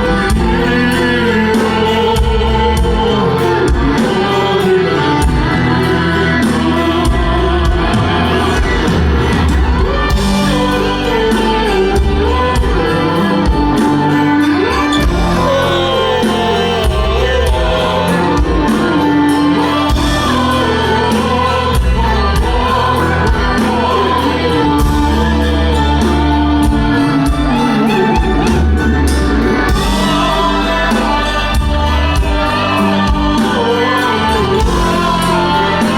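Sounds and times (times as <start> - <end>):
live rock band playing: 0.0 - 35.9
man singing operatically: 9.8 - 35.9.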